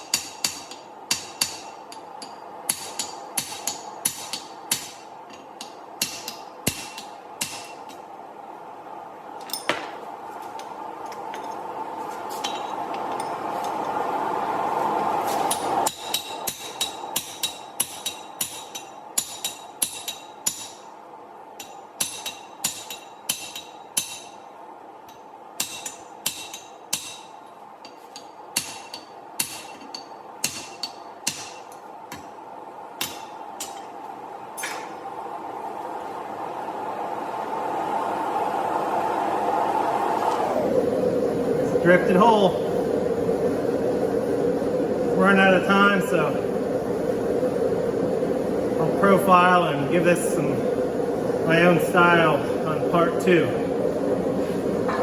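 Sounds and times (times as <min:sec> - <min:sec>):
hammer striking steel on anvil: 0:00.0 - 0:08.0, 0:15.5 - 0:20.9, 0:21.6 - 0:24.4, 0:25.1 - 0:32.4, 0:33.0 - 0:33.9
steady background roar: 0:00.0 - 0:55.0
steady rushing noise: 0:02.6 - 0:22.3, 0:30.5 - 0:55.0.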